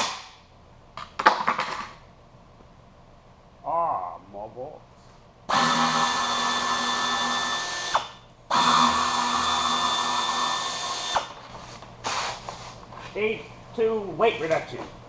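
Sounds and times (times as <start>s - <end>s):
handheld power tool whining: 5.5s - 11.5s.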